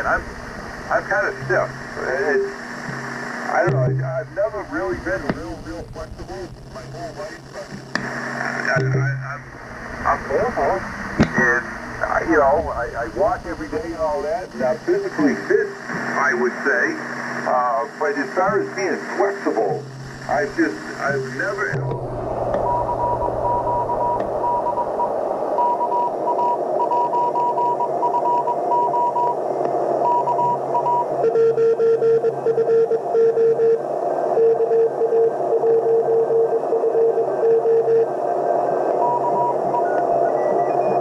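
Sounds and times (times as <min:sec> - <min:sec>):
radio band hiss: 0:00.0 - 0:41.0
morse code tones: 0:00.9 - 0:07.9, 0:22.6 - 0:29.4, 0:30.0 - 0:33.8, 0:34.4 - 0:38.1, 0:39.0 - 0:41.0.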